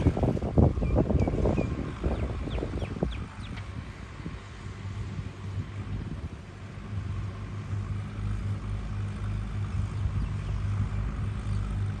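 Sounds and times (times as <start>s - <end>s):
engine humming: 0.0s - 12.0s.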